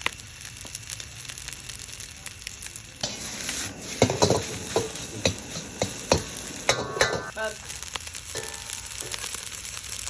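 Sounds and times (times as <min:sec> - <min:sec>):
fried rice sizzling in a pan: 0:00.0 - 0:10.0
spatula scraping a pan: 0:03.0 - 0:07.3, 0:08.4 - 0:09.4.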